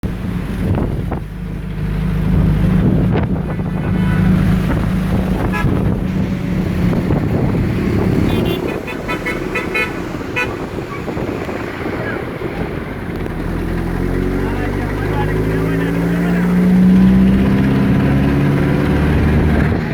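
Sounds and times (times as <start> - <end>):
wind on microphone: 0.0 - 14.4, 16.5 - 19.9
vehicle engine running: 0.0 - 19.9
car horn honks: 5.4 - 6.0, 8.2 - 11.3.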